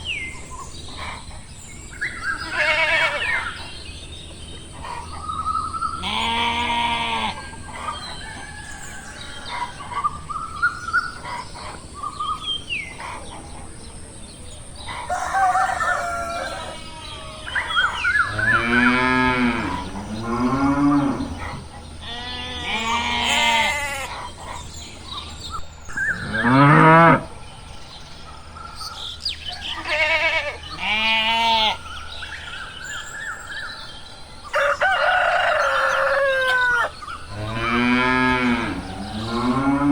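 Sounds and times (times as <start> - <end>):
cattle mooing: 18.2 - 24.1, 26.2 - 27.3, 37.3 - 39.9.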